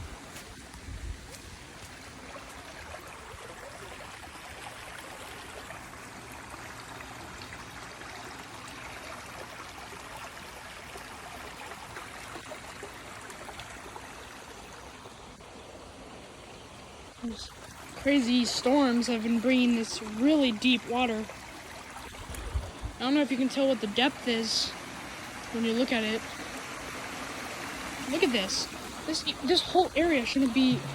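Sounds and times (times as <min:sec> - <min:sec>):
floodwater rushing: 0:17.3 - 0:30.9
low bump on microphone: 0:30.5 - 0:30.9.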